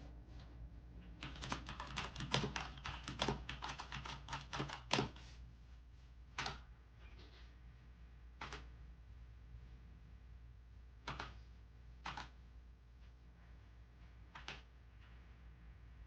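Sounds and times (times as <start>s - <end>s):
clicky mechanical keyboard typing: 1.2s - 5.2s.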